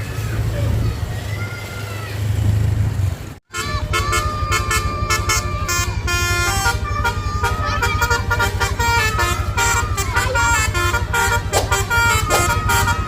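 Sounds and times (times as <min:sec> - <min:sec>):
multi-tone bus air horn tune: 0:03.5 - 0:13.0.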